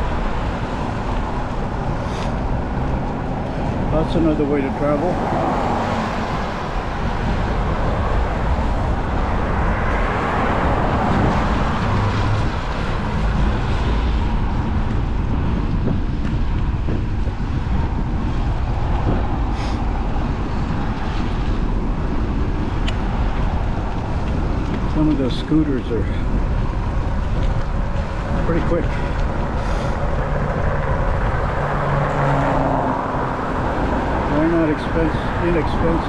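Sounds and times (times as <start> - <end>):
vehicle passing: 0.0 - 15.6, 26.1 - 36.0
road traffic: 0.0 - 36.0
wind rushing: 0.0 - 36.0.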